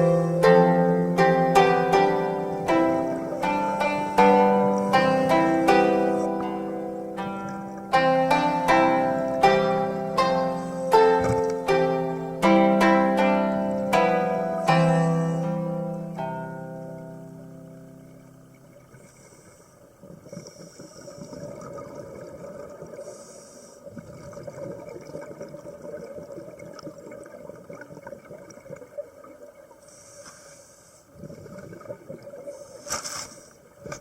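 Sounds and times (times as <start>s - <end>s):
regulator inhalation hiss: 19.0s - 21.4s, 23.0s - 23.9s, 29.8s - 31.2s
exhaled bubbles rumbling: 20.0s - 23.0s, 23.9s - 29.7s, 31.2s - 32.5s.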